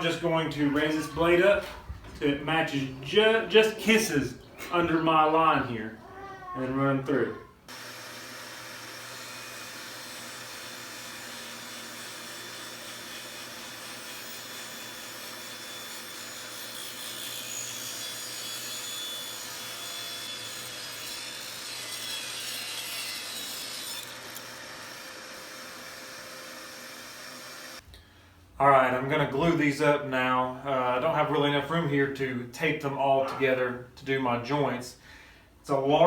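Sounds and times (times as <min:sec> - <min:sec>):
table saw cutting wood: 0:07.7 - 0:27.8.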